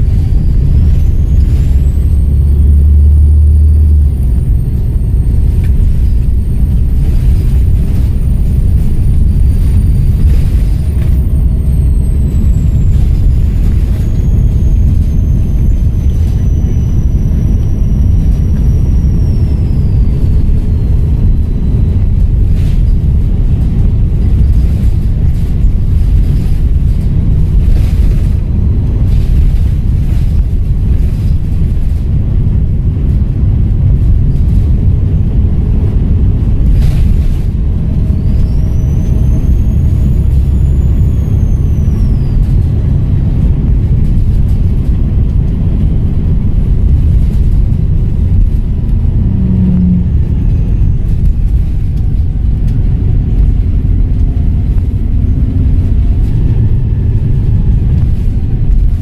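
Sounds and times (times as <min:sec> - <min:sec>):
diesel bus engine rumbling: 0:00.0 - 0:59.0
turbo whistle: 0:00.1 - 0:22.2, 0:38.1 - 0:42.7.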